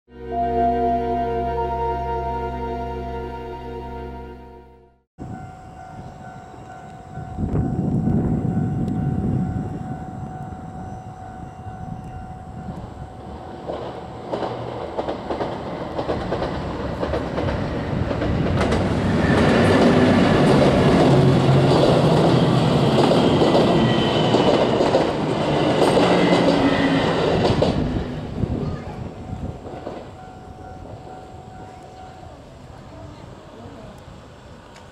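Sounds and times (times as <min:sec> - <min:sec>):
level crossing warning tone: 0:00.1 - 0:14.4
diesel train engine: 0:00.1 - 0:34.9
train wheels clattering on rails: 0:11.9 - 0:32.1.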